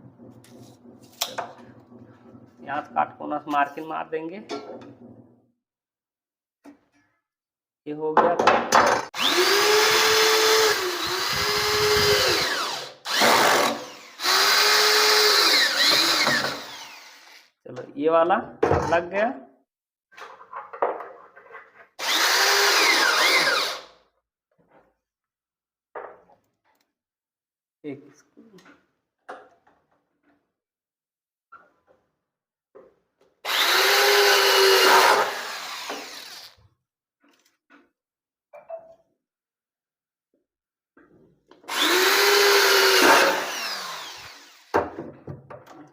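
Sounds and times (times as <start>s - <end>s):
electric drill driving screws: 9.2s - 17.6s, 22.0s - 24.0s, 33.4s - 36.6s, 41.7s - 44.8s.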